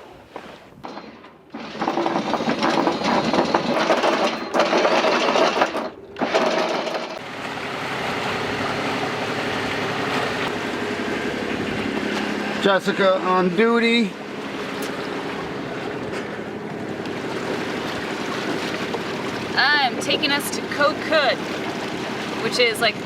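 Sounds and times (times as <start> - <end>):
boat engine humming: 0.1 - 23.0
anchor chain rattling: 0.8 - 7.2.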